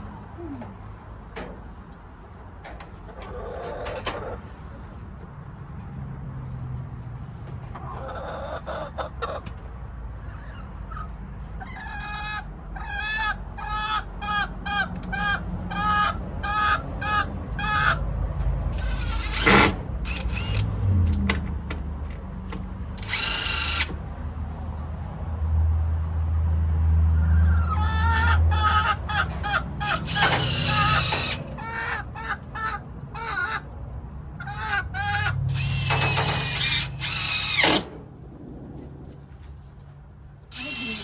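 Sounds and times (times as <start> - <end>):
hen squawking: 27.5 - 33.7, 34.4 - 37.3, 40.6 - 41.0.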